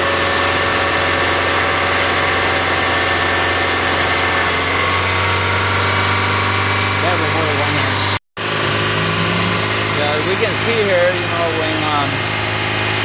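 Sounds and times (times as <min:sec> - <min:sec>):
electric cooling fan: 0:00.0 - 0:13.0
car engine idling: 0:03.6 - 0:13.0.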